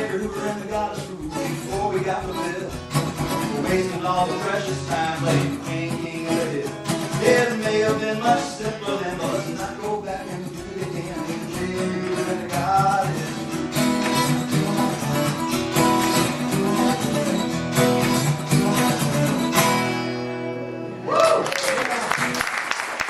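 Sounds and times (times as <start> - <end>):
acoustic guitar strumming: 0.0 - 21.1
audience cheering: 21.0 - 23.0.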